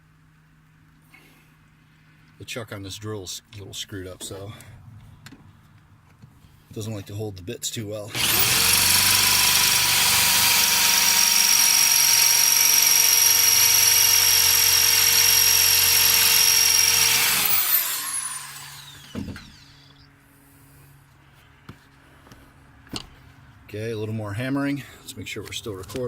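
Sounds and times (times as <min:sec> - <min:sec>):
electric drill running: 0:08.1 - 0:20.0.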